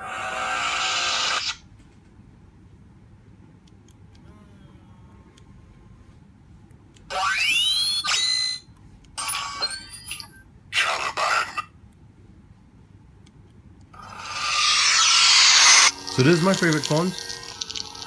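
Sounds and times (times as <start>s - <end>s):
short electronic sound effects: 14.8s - 18.0s.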